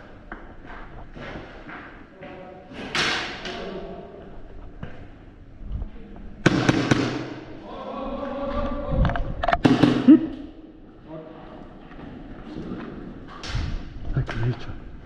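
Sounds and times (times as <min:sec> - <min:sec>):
airsoft guns firing: 0:06.4 - 0:07.5.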